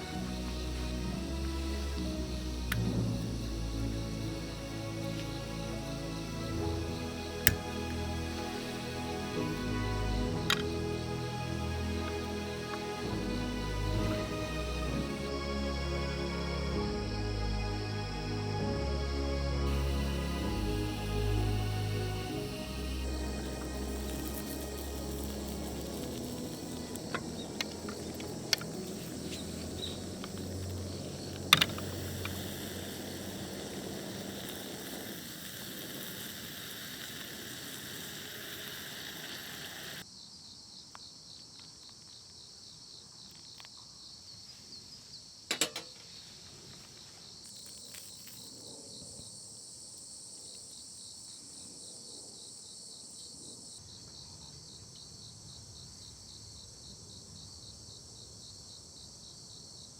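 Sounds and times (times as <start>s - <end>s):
low background sounds: 0.0s - 40.0s
crickets chirring: 0.0s - 59.9s
sharp clicks or knocks: 45.5s - 46.0s.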